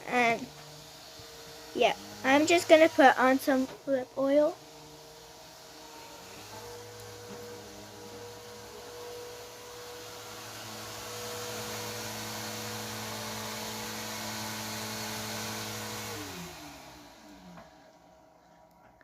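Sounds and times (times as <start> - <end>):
electric motor humming and spinning down: 0.0 - 18.8.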